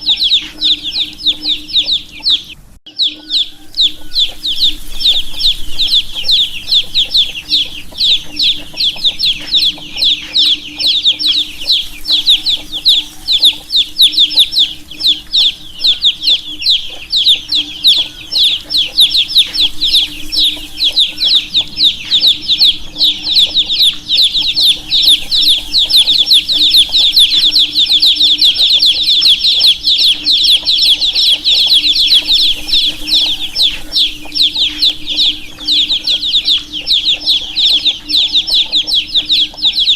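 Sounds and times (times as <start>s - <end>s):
baby chicks chirping: 0.0s - 39.9s
faint low hum: 0.0s - 39.9s.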